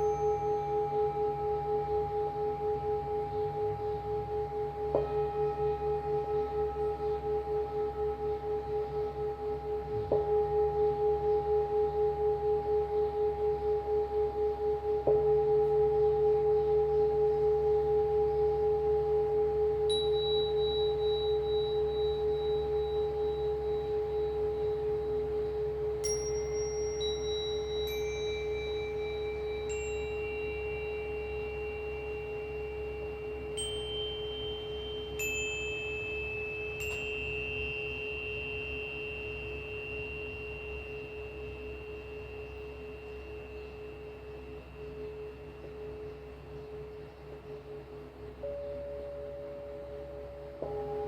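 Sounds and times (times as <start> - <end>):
small high-pitched metal chimes: 0.0 - 4.0, 19.8 - 46.1
singing bowl ringing: 0.0 - 51.0.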